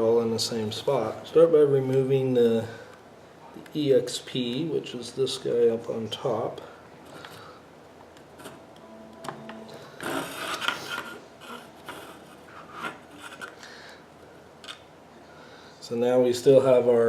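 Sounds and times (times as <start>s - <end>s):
scratchy rubbing of plastic connector: 10.0s - 13.6s.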